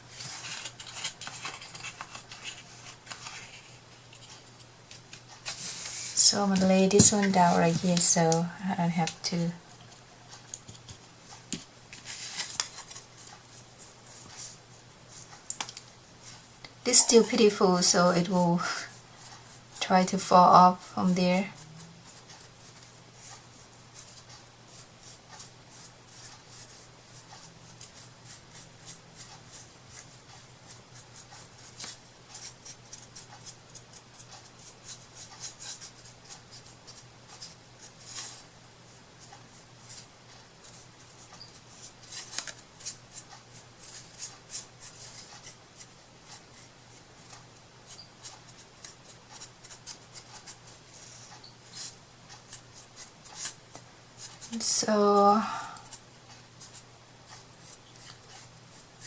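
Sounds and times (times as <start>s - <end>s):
steady low hum: 0.0s - 59.0s
scratchy paintbrush strokes: 21.1s - 38.5s, 55.8s - 59.0s.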